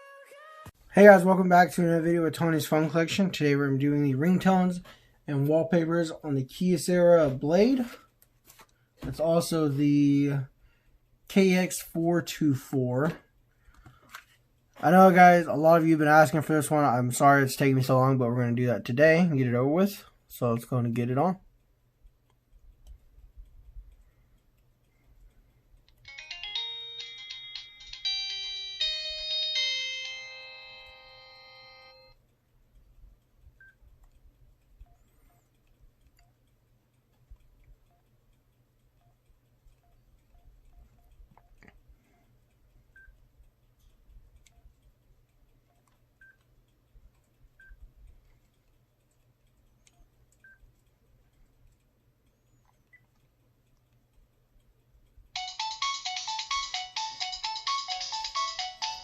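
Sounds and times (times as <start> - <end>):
phone polyphonic ringtone: 26.1 - 32.2, 55.4 - 59.0
faint clicks: 32.5 - 55.4.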